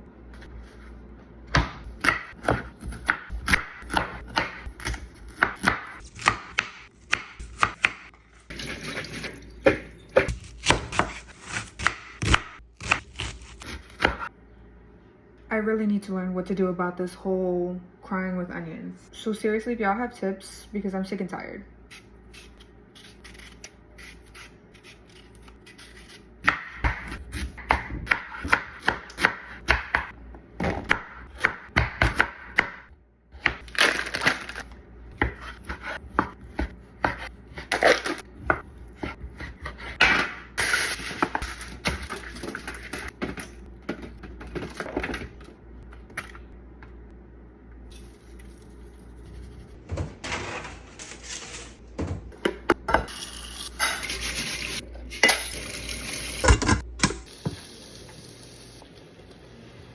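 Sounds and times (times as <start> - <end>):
knife chopping on cutting board: 1.5 - 8.2, 9.6 - 14.3, 35.2 - 40.4.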